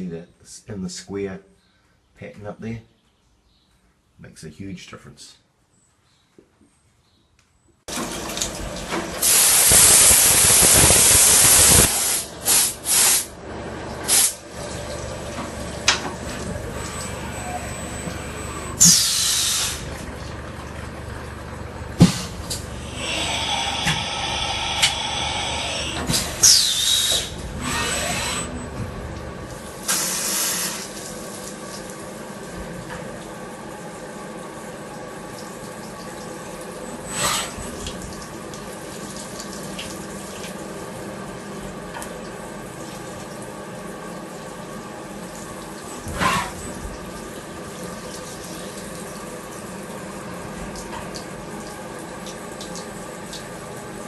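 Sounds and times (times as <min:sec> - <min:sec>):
flowing coolant: 0:07.9 - 0:54.0
spray-like noise burst: 0:09.2 - 0:13.3
falling machine whine: 0:13.3 - 0:29.8
machine tones: 0:14.6 - 0:22.0, 0:22.6 - 0:29.5.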